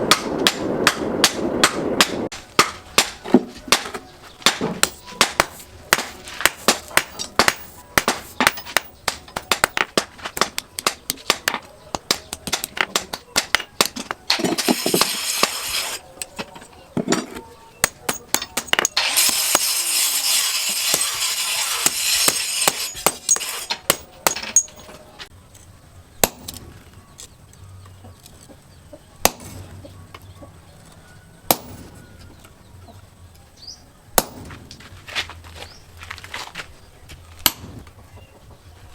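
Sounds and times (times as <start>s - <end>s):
steady rush of noise: 0.0s - 10.6s
hammer striking steel on anvil: 0.1s - 16.3s, 17.1s - 25.1s, 31.5s - 32.0s, 34.2s - 34.6s, 37.4s - 37.8s.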